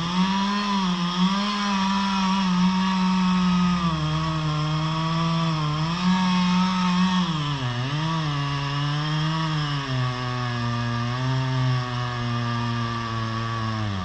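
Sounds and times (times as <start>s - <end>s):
chainsaw cutting wood: 0.0s - 14.0s.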